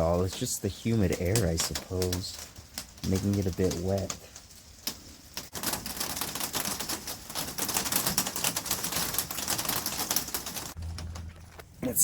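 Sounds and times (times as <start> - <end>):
heavy rain on a shelter roof: 5.5 - 10.8.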